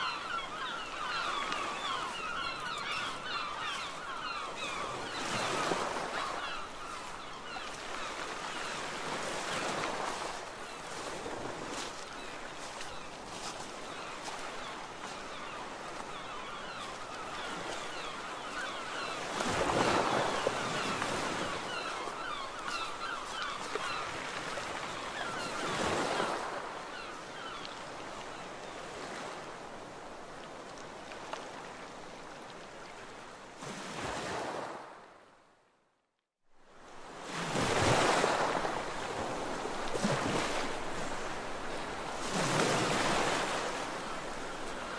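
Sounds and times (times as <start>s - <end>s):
sea waves washing onto beach: 0.0s - 35.0s, 37.0s - 44.9s.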